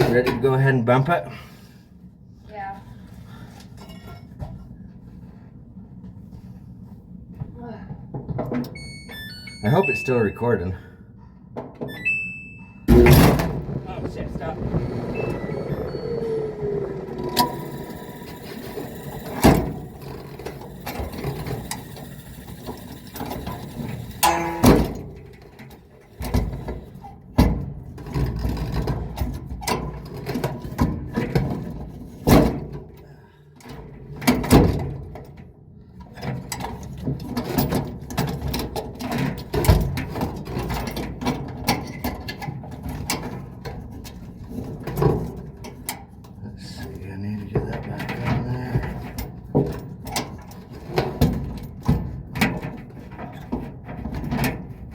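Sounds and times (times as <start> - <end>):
metal parts knocking and clanking: 17.2 - 27.0.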